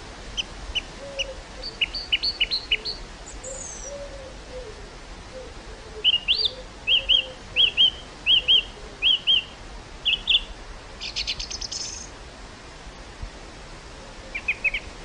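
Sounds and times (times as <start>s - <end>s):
steady breeze: 0.0s - 15.0s
bird chirping: 0.4s - 4.1s, 6.0s - 12.1s, 14.3s - 14.9s
bird hooting: 0.4s - 9.5s.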